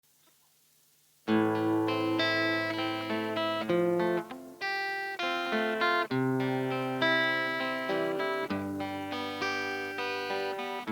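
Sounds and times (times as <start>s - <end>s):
guitar chords ringing: 1.3s - 10.9s.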